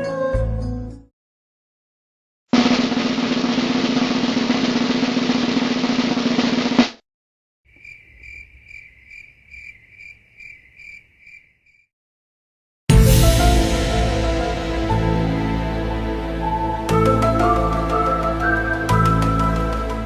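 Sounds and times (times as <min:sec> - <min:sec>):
snare drum roll: 0:02.6 - 0:07.0
cricket chirps: 0:07.7 - 0:11.9.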